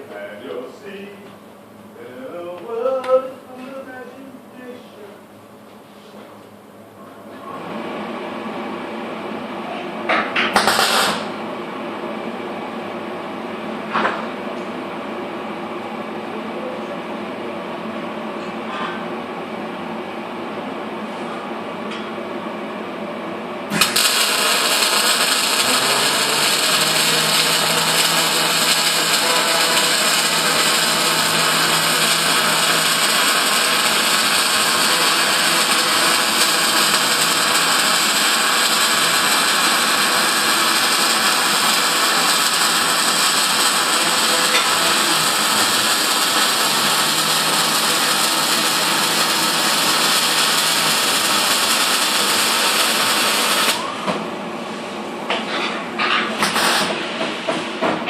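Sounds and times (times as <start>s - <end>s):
welding arc hissing and crackling: 10.4s - 11.4s, 23.7s - 53.9s, 56.4s - 57.0s
extractor fan humming: 22.3s - 54.5s.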